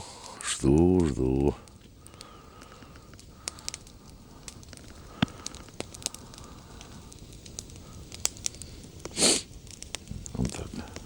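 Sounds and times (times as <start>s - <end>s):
campfire crackling and popping: 0.0s - 11.0s.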